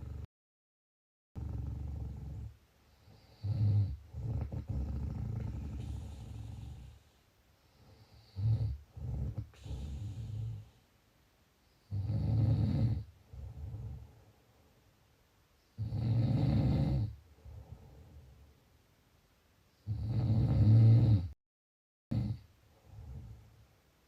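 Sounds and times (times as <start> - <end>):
low snoring: 0.0 - 0.3, 1.4 - 7.1, 7.7 - 10.8, 11.9 - 14.2, 15.8 - 18.3, 19.8 - 21.4, 22.1 - 23.5.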